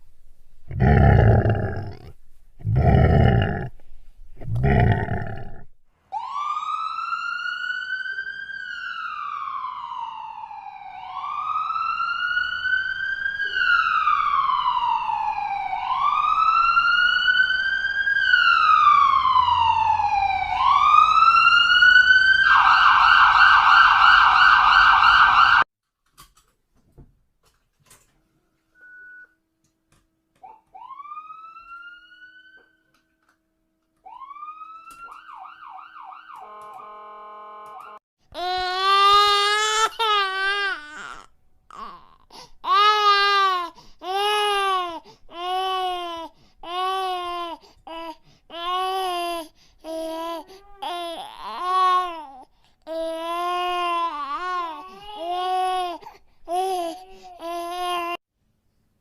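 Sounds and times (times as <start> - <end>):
emergency siren wailing: 6.1 - 25.7, 30.4 - 33.1, 34.0 - 38.0.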